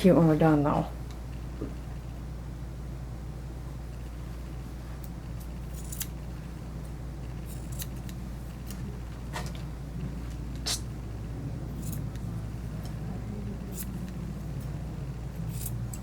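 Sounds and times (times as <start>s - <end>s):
steady low hum: 0.0s - 16.0s
shears snipping hair: 7.4s - 9.7s, 11.8s - 16.0s.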